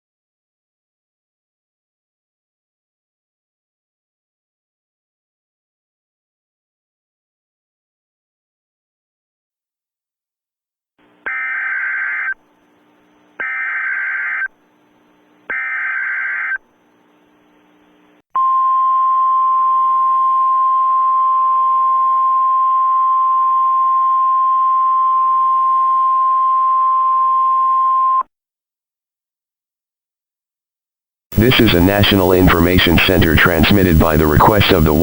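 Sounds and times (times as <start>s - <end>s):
steady attention tone: 31.3s - 35.0s.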